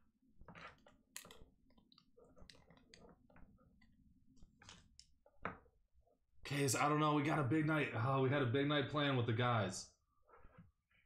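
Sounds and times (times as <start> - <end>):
faint small clicks and taps: 0.4 - 5.8.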